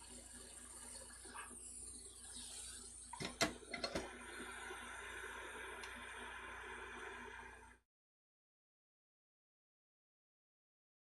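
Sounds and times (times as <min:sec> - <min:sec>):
hot air station hissing: 0:00.0 - 0:07.8.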